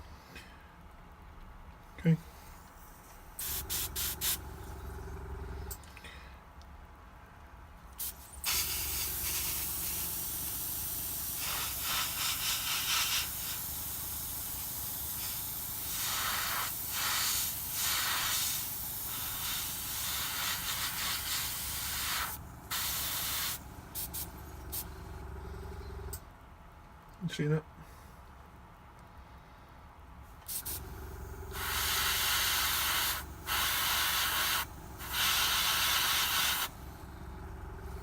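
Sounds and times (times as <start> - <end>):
airbrush spraying hiss: 3.4 - 4.8, 8.0 - 24.9, 30.5 - 36.8.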